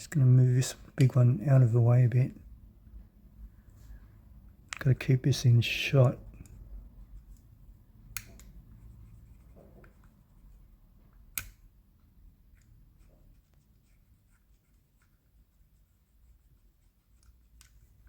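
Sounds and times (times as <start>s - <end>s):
paint pen tapping and scratching: 8.2s - 11.3s, 12.4s - 18.0s.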